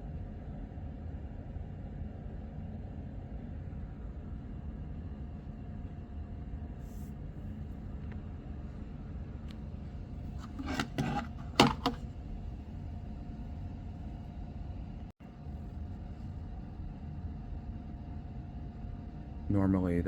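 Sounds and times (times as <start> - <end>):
low background hum: 0.0 - 20.0
handling clicks and knocks: 10.4 - 12.0.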